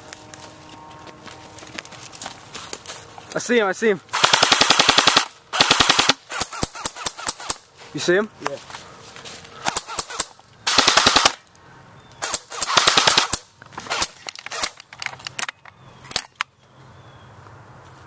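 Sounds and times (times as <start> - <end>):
airsoft rifle firing bursts: 4.1 - 7.7, 9.6 - 11.4, 12.2 - 14.7.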